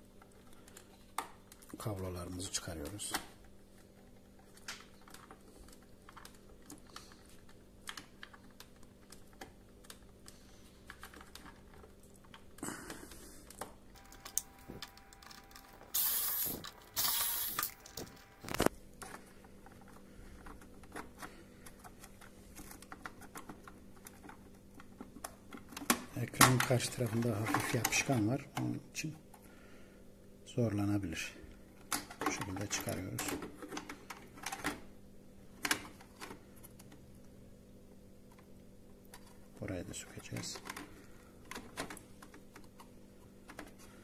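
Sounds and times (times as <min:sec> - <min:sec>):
short hissing noises: 0:15.7 - 0:18.7.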